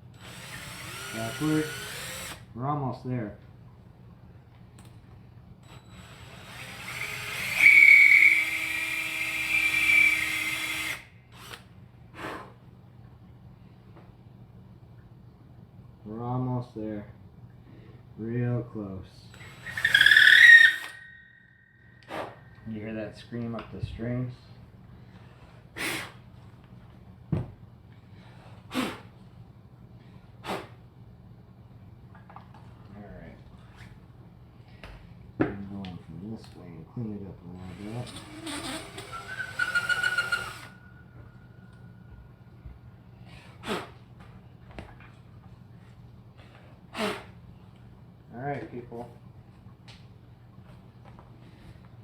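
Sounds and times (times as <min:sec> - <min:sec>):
power drill whining into wood: 0:00.1 - 0:02.4, 0:05.6 - 0:11.7, 0:19.3 - 0:21.4, 0:37.6 - 0:40.8
puffs of breath: 0:12.1 - 0:12.6
short scrapes: 0:22.0 - 0:22.4
steady low hum: 0:40.4 - 0:52.0.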